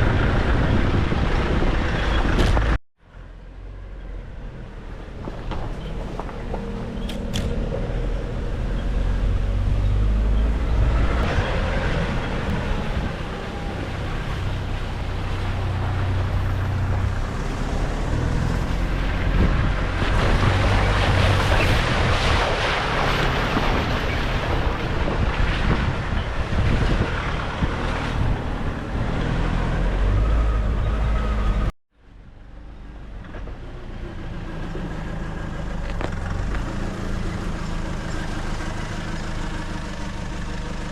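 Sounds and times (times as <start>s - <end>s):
rushing wind: 0.0s - 32.4s
vehicle engine running: 32.6s - 40.9s.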